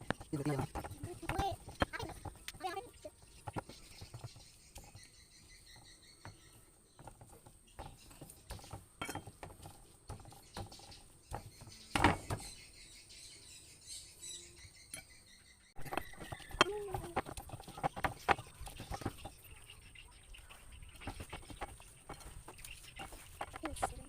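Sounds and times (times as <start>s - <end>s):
kitchen utensils tapping: 7.0s - 10.9s, 15.8s - 19.5s.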